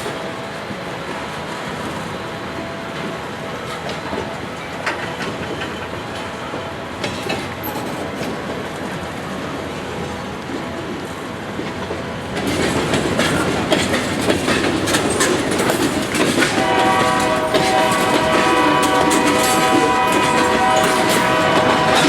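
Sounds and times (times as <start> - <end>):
freight train rolling past: 0.0 - 22.0
locomotive horn chord: 16.5 - 22.0.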